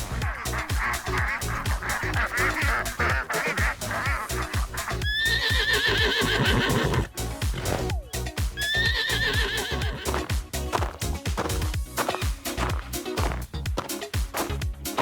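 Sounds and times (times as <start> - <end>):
background music with steady beat: 0.0 - 15.0
horse whinnying: 2.4 - 8.0, 8.7 - 10.3.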